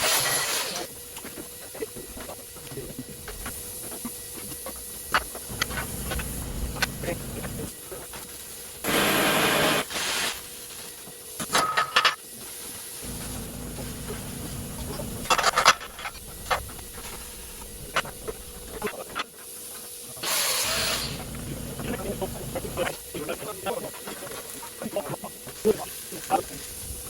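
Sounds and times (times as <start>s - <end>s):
hissing bursts: 5.5s - 7.7s, 13.0s - 18.8s, 20.2s - 22.9s
low hum: 5.5s - 7.7s, 13.0s - 18.8s, 21.1s - 22.9s.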